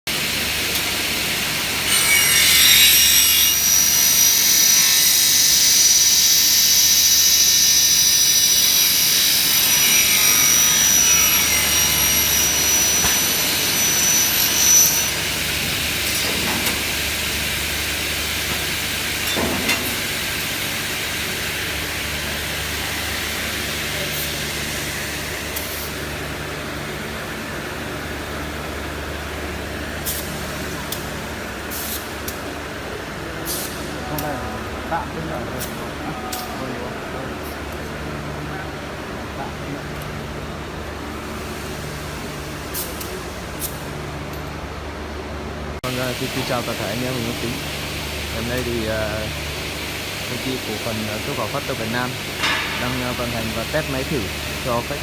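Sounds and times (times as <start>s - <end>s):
saw cutting high-pitched whine: 1.7s - 18.2s.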